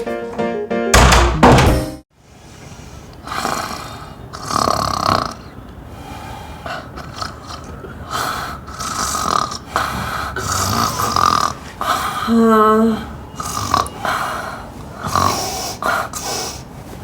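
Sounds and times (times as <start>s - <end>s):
person snoring: 3.3s - 5.5s, 7.0s - 16.2s.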